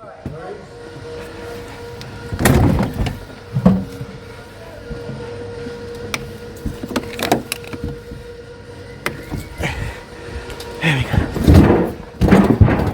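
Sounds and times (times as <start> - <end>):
steady low hum: 0.0 - 12.9
scrap rattling and clatter: 2.3 - 4.4, 10.8 - 12.9.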